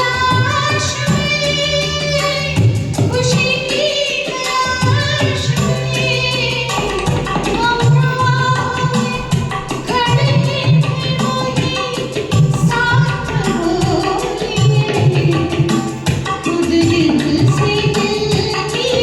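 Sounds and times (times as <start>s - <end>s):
backing track with percussion and bass: 0.0s - 19.0s
person singing karaoke: 0.0s - 19.0s.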